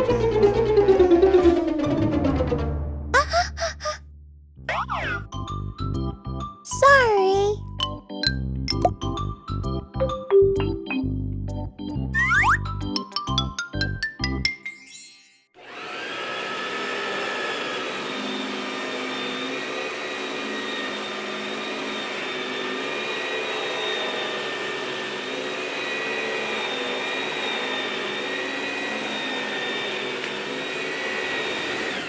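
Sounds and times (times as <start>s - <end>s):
toy vacuum cleaner motor whirring: 15.6s - 32.0s.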